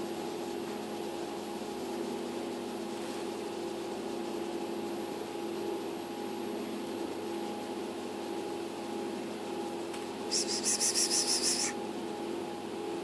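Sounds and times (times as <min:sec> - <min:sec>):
faint hiss: 0:10.2 - 0:11.8
machine hum with two tones: 0:10.3 - 0:11.8.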